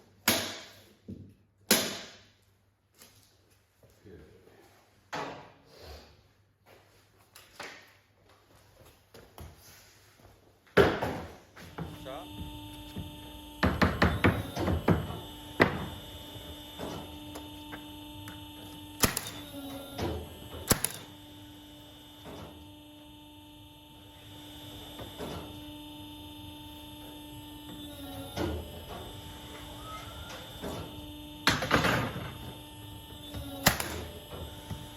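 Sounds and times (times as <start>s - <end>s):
mechanical hum: 0.0s - 34.9s
sharp knocks and clunks: 10.8s - 16.0s.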